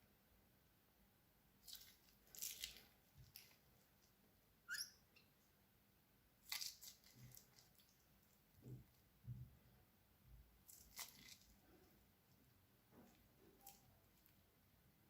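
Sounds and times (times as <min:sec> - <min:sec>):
crunchy slime crackling: 0:01.6 - 0:03.7, 0:06.4 - 0:08.4, 0:10.6 - 0:12.0.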